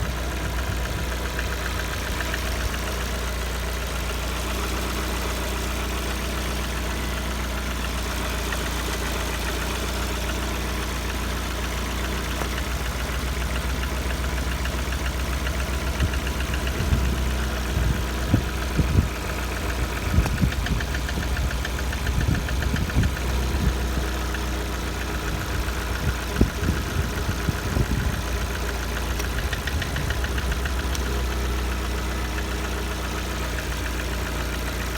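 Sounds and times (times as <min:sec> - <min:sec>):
car engine idling with knock: 0:00.0 - 0:34.9
irregular low thuds: 0:12.3 - 0:32.6.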